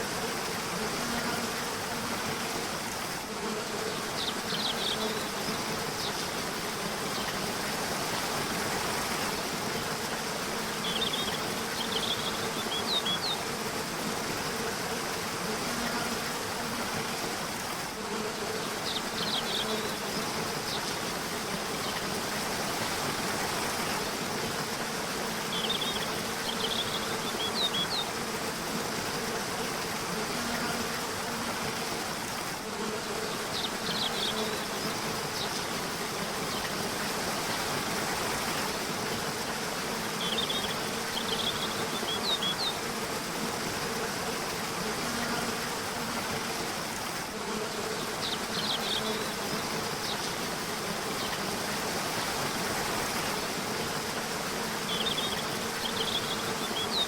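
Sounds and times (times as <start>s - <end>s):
river water rushing: 49.5s - 57.0s.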